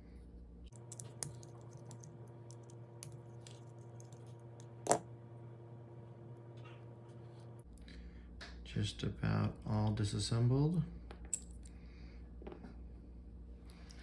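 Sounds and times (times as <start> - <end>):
small metal parts clicking: 0.7 - 4.3.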